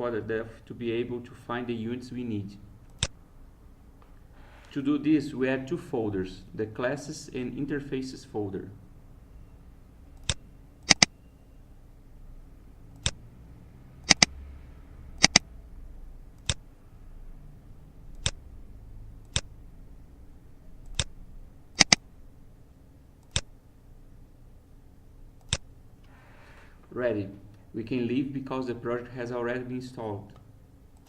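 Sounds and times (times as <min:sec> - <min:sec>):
computer mouse button clicking: 0:10.2 - 0:11.1, 0:14.1 - 0:14.3, 0:15.2 - 0:15.4, 0:21.8 - 0:22.0.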